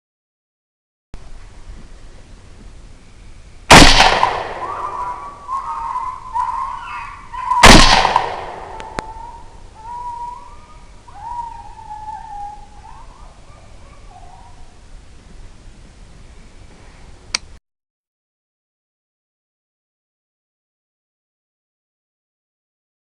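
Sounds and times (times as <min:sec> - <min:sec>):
suppressed rifle shots with echo: 0:03.7 - 0:05.2, 0:07.5 - 0:09.1
coyotes howling and yipping: 0:04.2 - 0:14.8.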